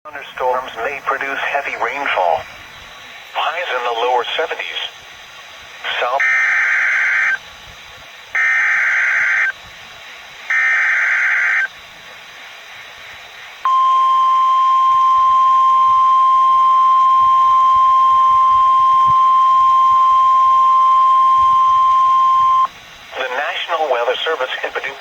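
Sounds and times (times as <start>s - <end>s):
steady warning alarm tone: 5.8s - 7.5s, 8.3s - 9.7s, 10.5s - 11.8s, 13.6s - 24.0s
screechy data buzz: 5.9s - 7.4s, 8.3s - 9.6s, 10.5s - 11.8s, 13.7s - 23.3s.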